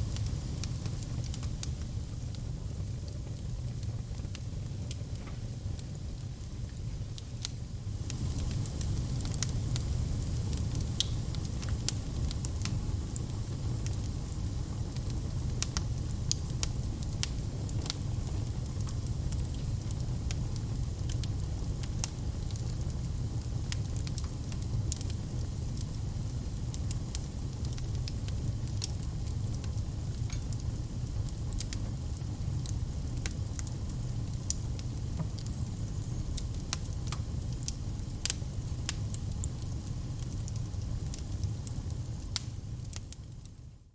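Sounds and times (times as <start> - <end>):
wood fire crackling and popping: 0.0 - 43.8.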